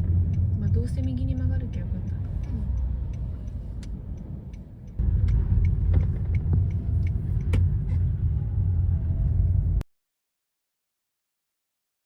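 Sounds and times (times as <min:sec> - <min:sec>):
car road and engine rumble: 0:00.0 - 0:09.8
faint ticks: 0:00.3 - 0:07.5.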